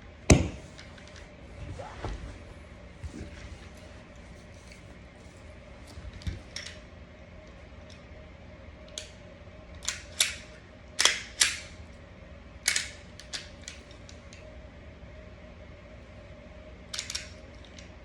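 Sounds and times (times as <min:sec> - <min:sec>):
pistol parts clicking: 0:09.8 - 0:11.7, 0:12.6 - 0:14.2.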